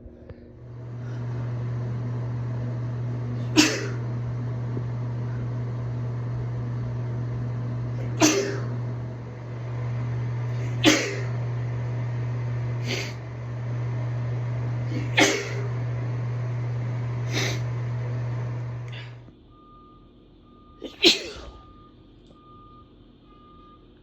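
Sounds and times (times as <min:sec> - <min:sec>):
steady low hum: 0:00.0 - 0:23.5
woman sneezing: 0:03.6 - 0:04.0, 0:08.2 - 0:08.6, 0:10.8 - 0:11.3, 0:15.2 - 0:15.6, 0:20.8 - 0:21.6.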